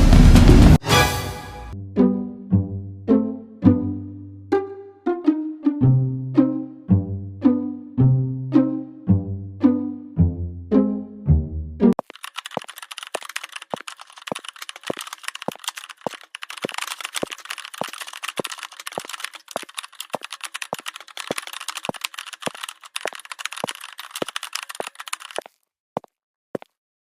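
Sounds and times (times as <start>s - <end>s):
dense rapid clicking: 12.0s - 25.4s
sharp clicks: 12.0s - 25.5s.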